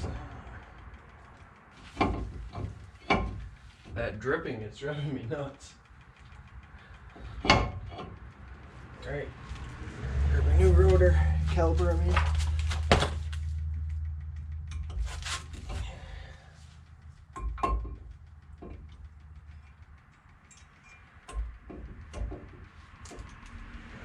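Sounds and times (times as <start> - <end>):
low rumble: 5.8 - 24.0.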